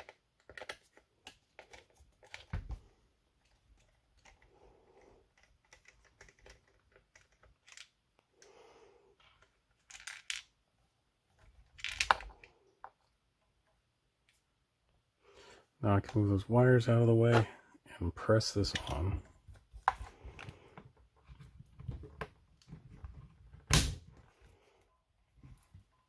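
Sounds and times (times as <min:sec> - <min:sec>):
small plastic clicks: 0:00.0 - 0:02.7, 0:05.2 - 0:08.5.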